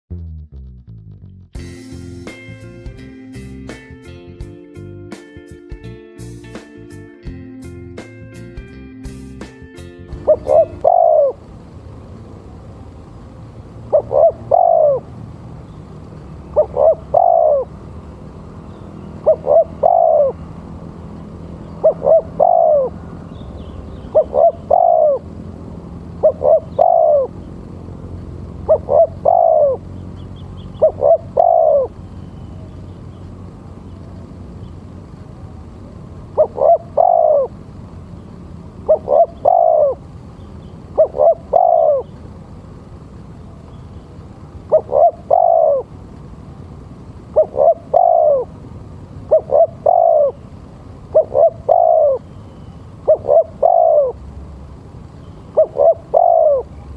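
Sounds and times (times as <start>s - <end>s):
dove cooing: 10.1s - 11.6s, 13.8s - 15.2s, 16.5s - 17.8s, 19.0s - 20.8s, 21.7s - 23.2s, 24.0s - 27.8s, 28.6s - 32.7s, 35.4s - 37.7s, 38.8s - 40.1s, 40.9s - 42.2s, 44.4s - 46.0s, 47.3s - 54.2s, 55.1s - 56.9s.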